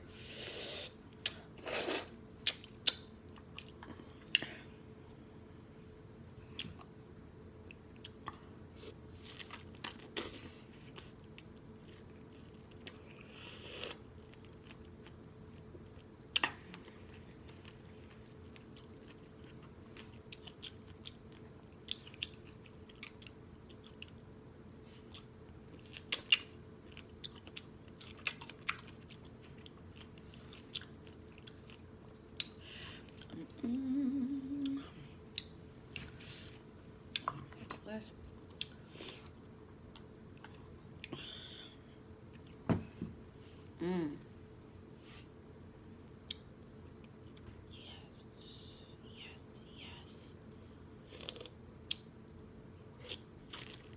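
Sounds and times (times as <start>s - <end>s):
person chewing wetly: 7.6s - 24.2s, 25.0s - 33.4s
person humming: 33.3s - 35.0s, 43.8s - 44.3s.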